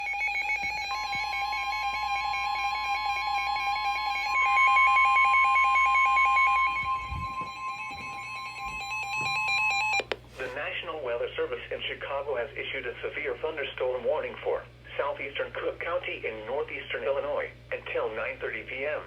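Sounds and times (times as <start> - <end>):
two-tone alarm signal: 0.0 - 10.0.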